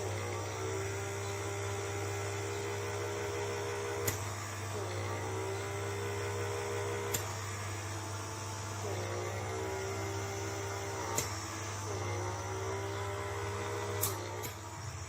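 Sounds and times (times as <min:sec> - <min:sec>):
electric vacuum humming: 0:00.0 - 0:15.0
sharp click: 0:14.0 - 0:14.6.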